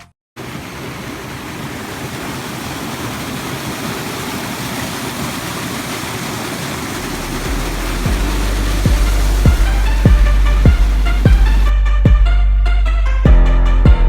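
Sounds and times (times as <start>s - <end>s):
waterfall rushing: 0.4s - 11.7s
deep low hum: 7.1s - 14.0s.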